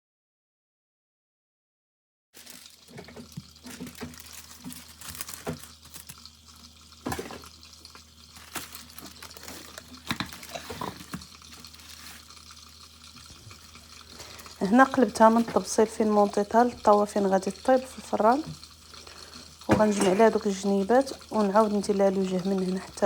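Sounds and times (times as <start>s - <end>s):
rustling of pastry sheets: 2.4s - 6.3s, 8.3s - 12.6s.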